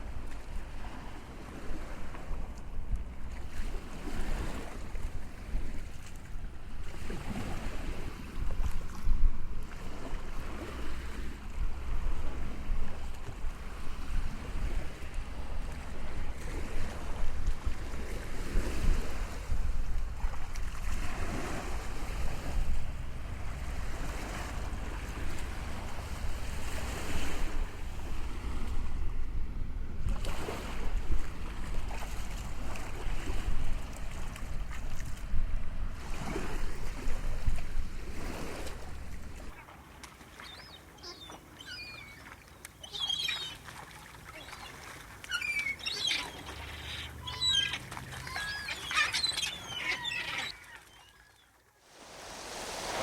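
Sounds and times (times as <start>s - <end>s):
sea waves washing in: 0.0s - 51.0s, 51.8s - 53.0s
low wind rumble: 21.0s - 39.6s.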